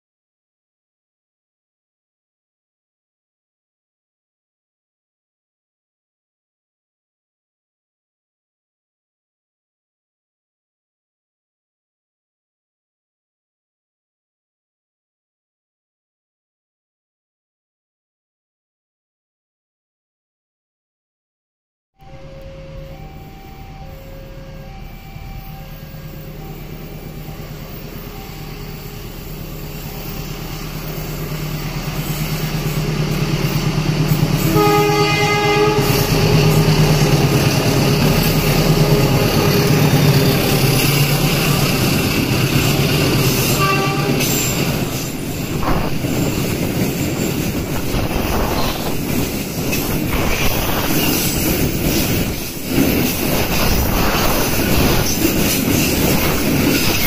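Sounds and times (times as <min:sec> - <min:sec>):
diesel locomotive engine drone: 0:22.0 - 0:57.0
train wheel clatter: 0:29.2 - 0:57.0
train horn blast: 0:34.2 - 0:41.7, 0:42.6 - 0:44.8.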